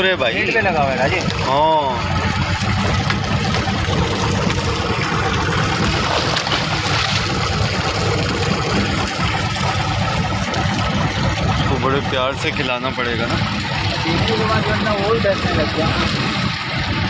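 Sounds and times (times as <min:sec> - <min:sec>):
boat engine running: 0:00.0 - 0:17.0
wind and sea noise: 0:00.0 - 0:17.0.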